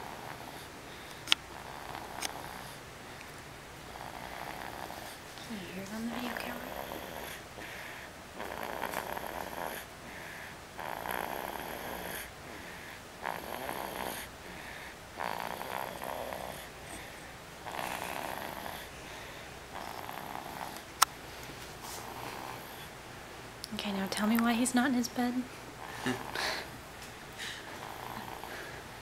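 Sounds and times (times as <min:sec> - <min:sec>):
slow regular snoring: 0:00.0 - 0:02.8, 0:03.9 - 0:05.3, 0:06.0 - 0:20.9, 0:21.9 - 0:23.0, 0:25.8 - 0:26.7, 0:27.7 - 0:28.9.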